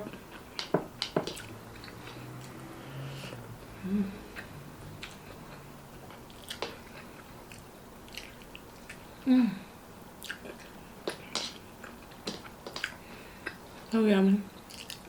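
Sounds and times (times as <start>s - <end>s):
wet chewing and smacking: 0.6s - 2.6s, 4.4s - 9.1s, 10.2s - 13.9s, 14.6s - 15.0s
person humming mm: 3.8s - 4.4s, 9.2s - 9.7s.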